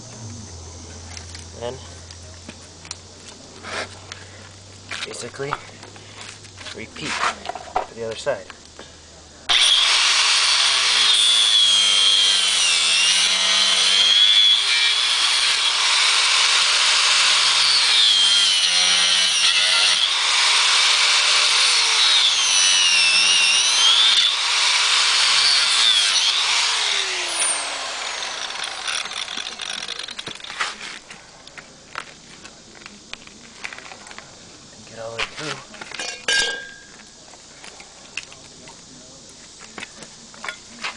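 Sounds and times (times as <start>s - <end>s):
angle grinder cutting metal: 9.5s - 30.9s.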